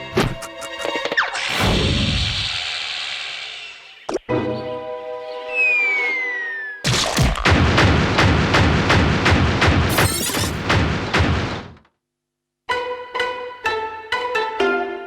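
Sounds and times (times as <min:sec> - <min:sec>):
rapid loud bangs: 0:00.0 - 0:02.7, 0:06.9 - 0:11.8
cartoon falling whistle: 0:05.4 - 0:06.9.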